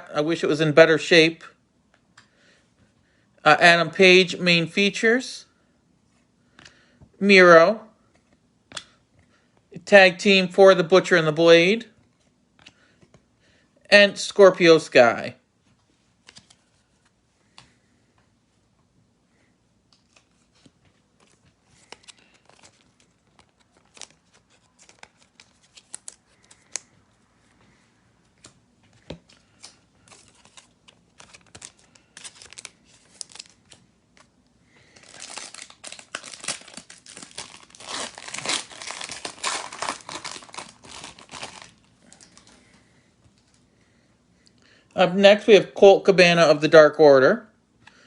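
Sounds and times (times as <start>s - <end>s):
trading cards clicking and rustling: 19.9s - 27.0s
card pack wrapper tearing and crinkling: 20.0s - 26.9s, 29.4s - 42.6s.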